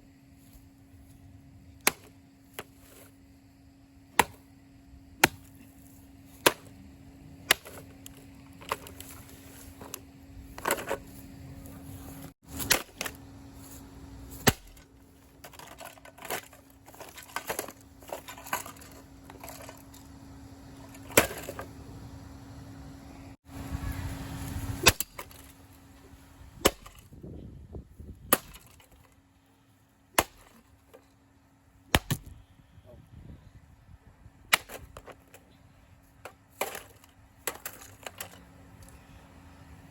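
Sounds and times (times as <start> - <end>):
steady low hum: 0.0 - 39.9
sharp hits and breaking cracks: 31.9 - 32.3.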